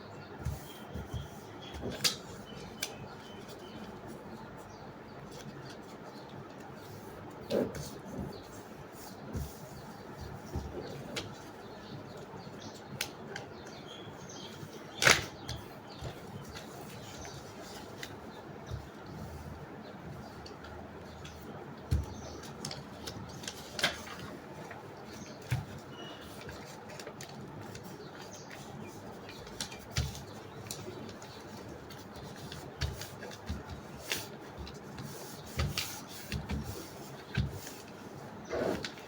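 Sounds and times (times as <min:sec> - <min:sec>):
paper crinkling and folding: 0:14.5 - 0:39.0.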